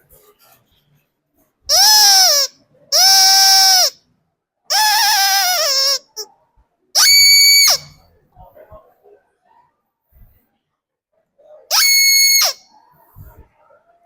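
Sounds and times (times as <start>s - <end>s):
rubber chicken squawking: 1.7s - 4.0s, 4.7s - 6.3s, 7.0s - 8.0s, 11.7s - 12.7s.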